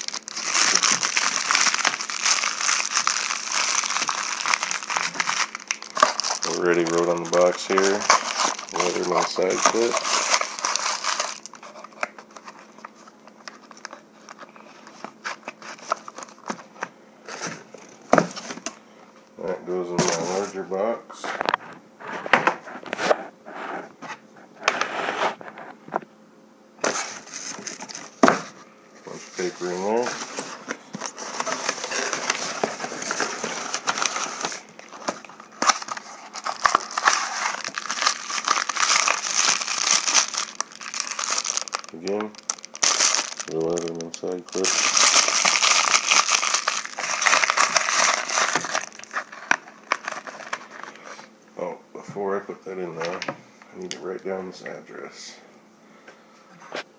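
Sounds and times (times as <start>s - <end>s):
packing paper crumpling: 0.0s - 16.7s, 26.8s - 51.3s.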